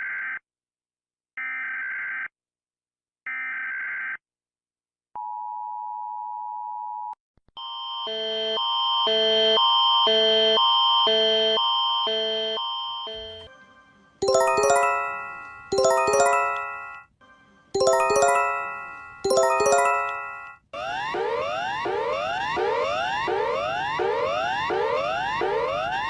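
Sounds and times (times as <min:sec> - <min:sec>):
quick alternating alert tones: 0:14.2 - 0:17.0, 0:17.8 - 0:20.5.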